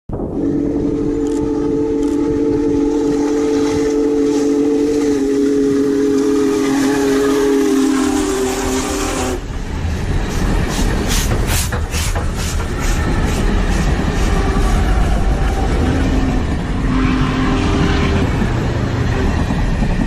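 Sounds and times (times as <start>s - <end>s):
locomotive air horn blast: 0.2s - 9.5s, 12.9s - 18.5s.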